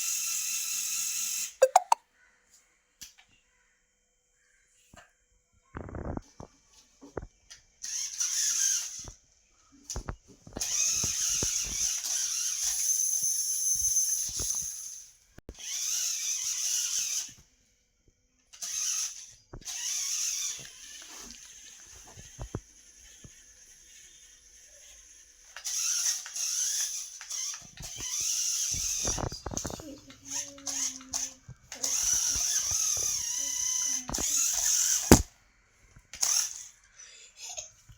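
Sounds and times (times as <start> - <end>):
toy car motor whirring: 0.0 - 1.6, 7.5 - 9.2, 9.9 - 17.5, 18.5 - 35.3, 36.1 - 37.7.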